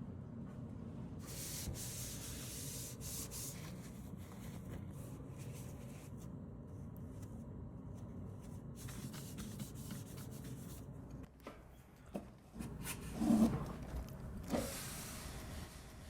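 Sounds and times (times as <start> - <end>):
low steady hum: 0.0 - 14.5
rubbing and handling noises: 1.2 - 10.9.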